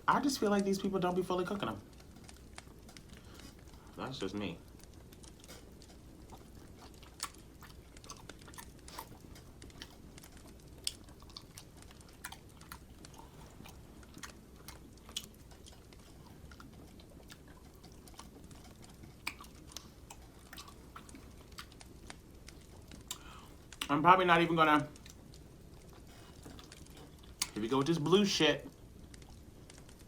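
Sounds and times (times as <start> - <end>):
faint low room noise: 0.0 - 30.0
chewing and biting chicken: 4.6 - 23.9, 24.9 - 27.6.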